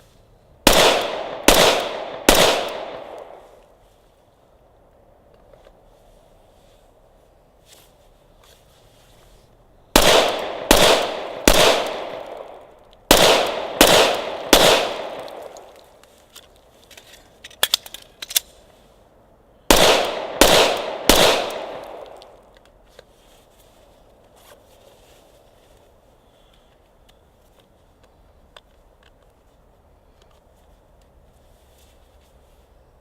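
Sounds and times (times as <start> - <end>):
pistol shots with echo: 0.7 - 3.4, 9.9 - 15.7, 19.7 - 22.4.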